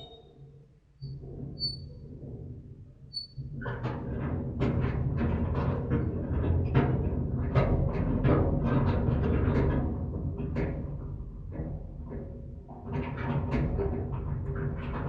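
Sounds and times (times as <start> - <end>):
high metal squeaks: 0.0 - 0.4, 1.6 - 1.9.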